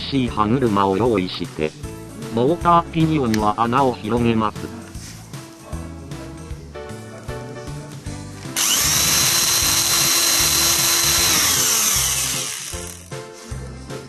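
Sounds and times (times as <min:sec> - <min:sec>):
background music: 0:00.0 - 0:14.0
small electric drill running: 0:08.6 - 0:13.1.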